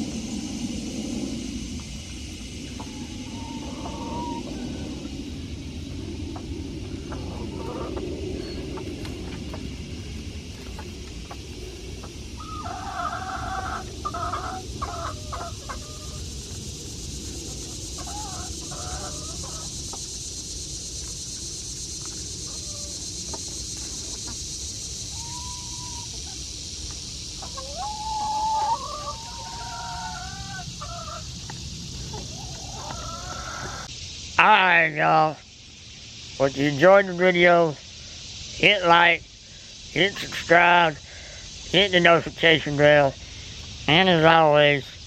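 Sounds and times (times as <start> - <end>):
chickens clucking and squawking: 0.0 - 34.3.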